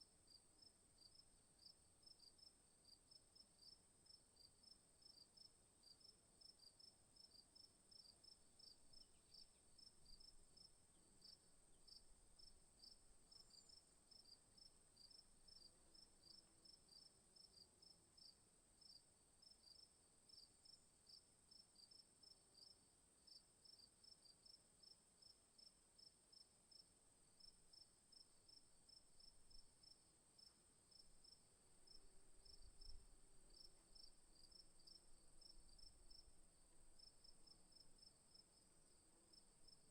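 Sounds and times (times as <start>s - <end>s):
insects chirping: 27.4s - 39.9s.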